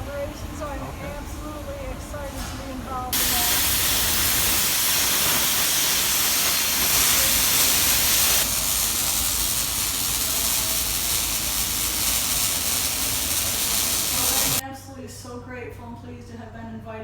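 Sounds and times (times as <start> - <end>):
plasma cutter hissing: 3.1 - 14.6.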